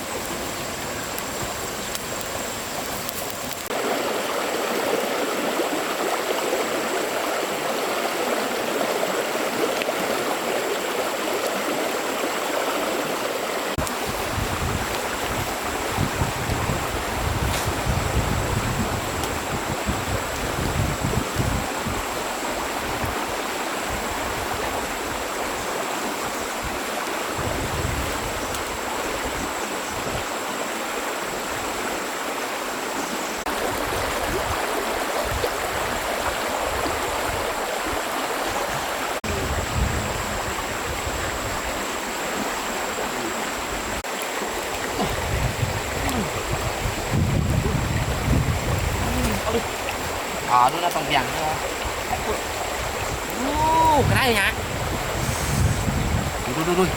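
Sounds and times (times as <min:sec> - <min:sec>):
stream water flowing: 0:00.0 - 0:56.9
wind buffeting microphone: 0:13.8 - 0:25.4, 0:26.4 - 0:30.3, 0:33.4 - 0:44.0, 0:44.7 - 0:56.9.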